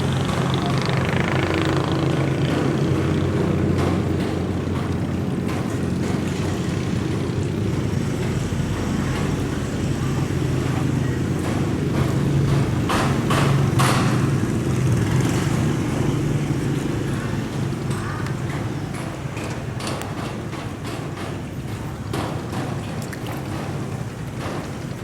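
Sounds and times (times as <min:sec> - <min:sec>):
boat engine running: 0:00.0 - 0:25.0.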